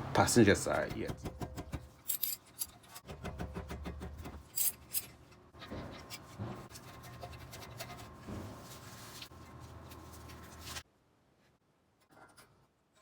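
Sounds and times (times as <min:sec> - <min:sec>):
hand tools scratching and clicking: 0:01.5 - 0:03.1, 0:03.7 - 0:08.2.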